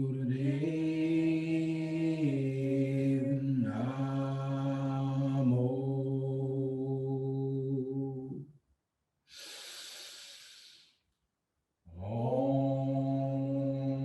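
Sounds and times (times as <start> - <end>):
breath drawn in: 9.3 - 11.0
man chanting sustained tone: 12.0 - 14.0.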